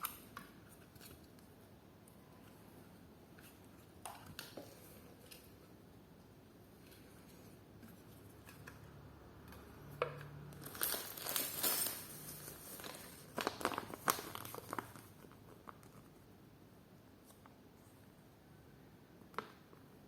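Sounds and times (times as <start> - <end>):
plastic packaging crinkling: 10.5 - 16.0.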